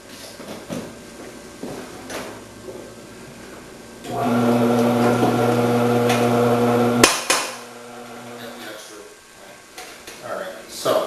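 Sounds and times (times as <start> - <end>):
food processor motor humming: 4.1 - 8.6.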